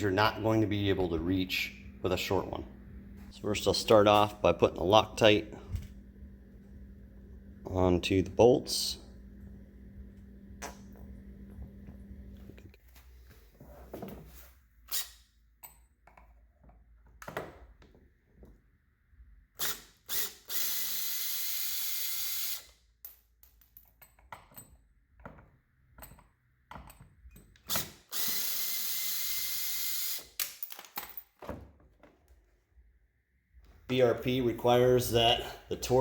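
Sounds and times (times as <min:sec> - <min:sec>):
cordless drill running: 0:19.6 - 0:22.7, 0:27.7 - 0:30.3
knocks and clicks of parts: 0:23.0 - 0:28.4.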